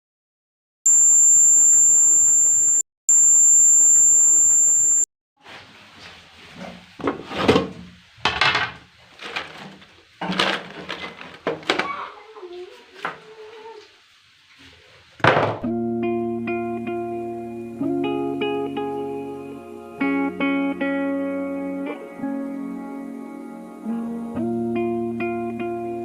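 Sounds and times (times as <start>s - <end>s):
high-pitched doorbell buzzer beeps: 0.9s - 5.1s.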